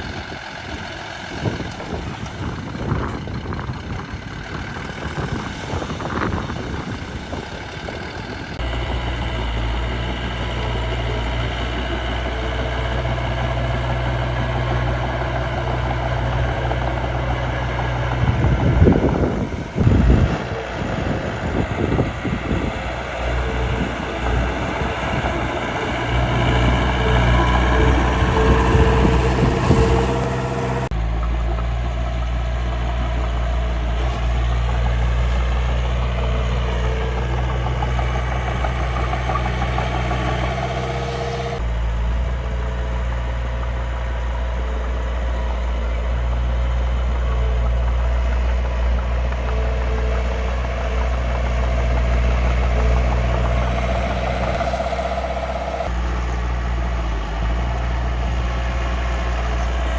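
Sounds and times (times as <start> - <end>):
toy truck engine hum: 0.0 - 59.9.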